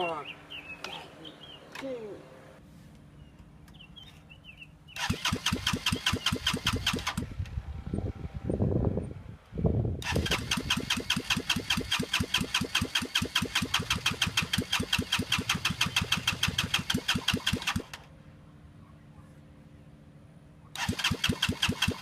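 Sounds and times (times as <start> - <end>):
scooter engine running: 10.0 - 18.0
faint low hum: 17.8 - 20.8.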